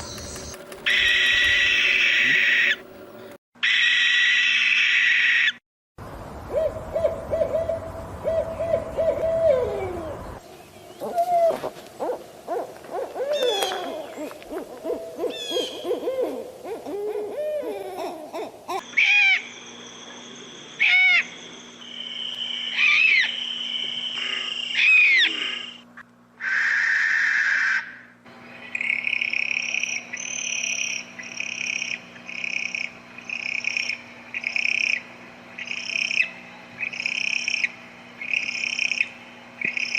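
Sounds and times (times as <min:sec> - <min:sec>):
high owl calls: 0:00.1 - 0:02.8, 0:06.5 - 0:10.2, 0:11.0 - 0:19.6, 0:20.8 - 0:21.4, 0:22.2 - 0:25.8, 0:26.4 - 0:28.1
harsh noisy call: 0:00.8 - 0:02.9
owl hooting: 0:00.8 - 0:02.9, 0:06.5 - 0:10.2, 0:11.0 - 0:19.6, 0:20.8 - 0:21.4, 0:22.2 - 0:25.8, 0:26.4 - 0:28.1
owl trills: 0:00.9 - 0:02.8, 0:11.0 - 0:17.8, 0:18.4 - 0:19.5, 0:22.7 - 0:25.8, 0:26.4 - 0:28.1.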